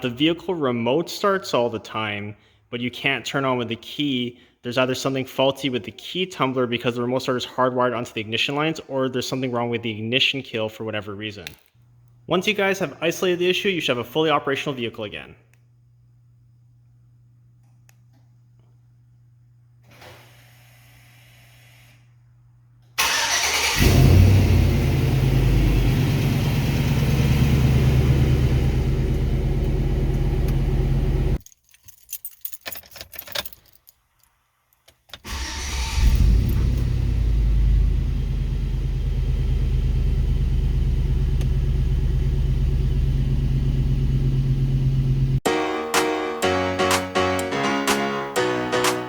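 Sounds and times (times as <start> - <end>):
pickup engine starting and idling: 23.0 - 31.4, 35.3 - 45.4.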